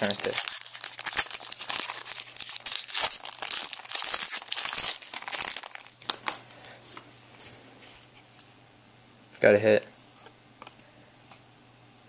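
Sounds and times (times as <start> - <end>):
plastic wrapper tearing and crinkling: 0.0 - 6.8.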